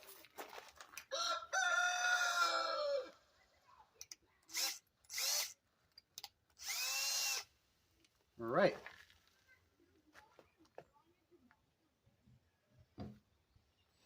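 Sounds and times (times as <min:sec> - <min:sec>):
rooster crowing: 0:01.1 - 0:03.2.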